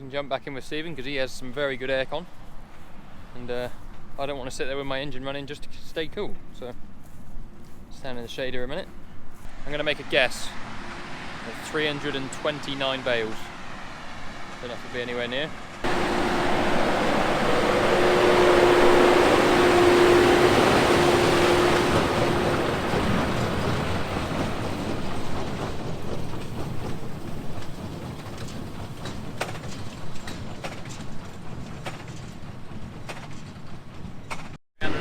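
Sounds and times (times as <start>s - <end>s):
tractor and baler working: 9.5s - 33.6s, 34.3s - 35.0s
steady mechanical whine: 14.7s - 29.1s.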